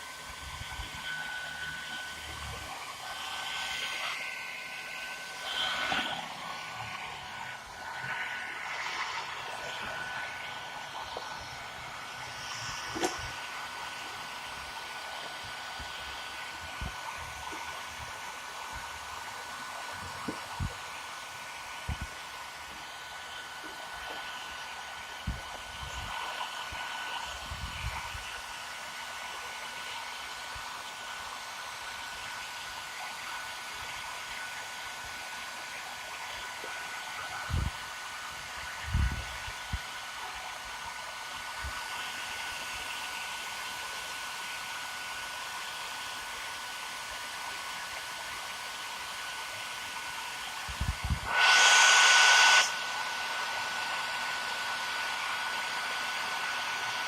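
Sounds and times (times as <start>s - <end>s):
hair dryer blowing: 0.0s - 57.0s
loud rush of air: 2.3s - 28.5s, 37.2s - 40.5s, 50.5s - 57.0s.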